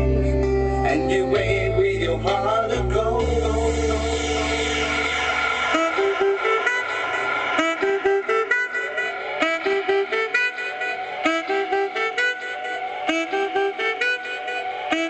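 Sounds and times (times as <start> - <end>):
instrumental melody of quick notes: 3.2 - 15.0.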